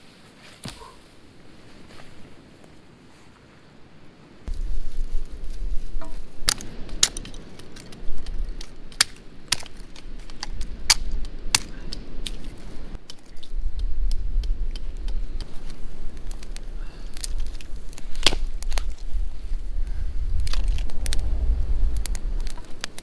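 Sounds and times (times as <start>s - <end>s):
wood cracking and snapping: 5.5s - 19.3s, 20.3s - 23.0s.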